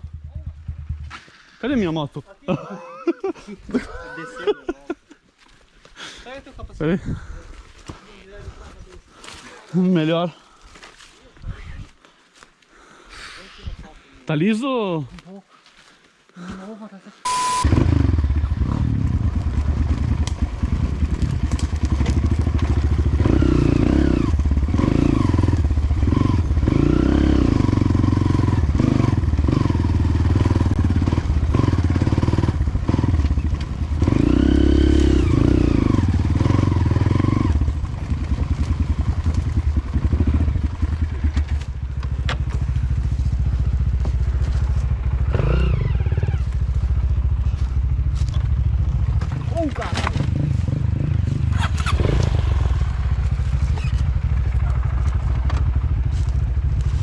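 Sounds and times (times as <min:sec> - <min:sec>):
motorcycle engine revving: 0:00.0 - 0:01.6, 0:17.3 - 0:57.0.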